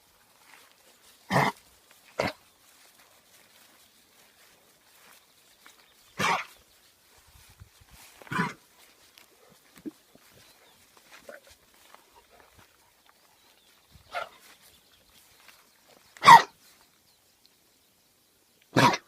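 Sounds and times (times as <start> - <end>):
animal coughing: 1.3 - 1.6, 6.2 - 6.5, 8.3 - 8.6, 16.2 - 16.5, 18.7 - 19.0.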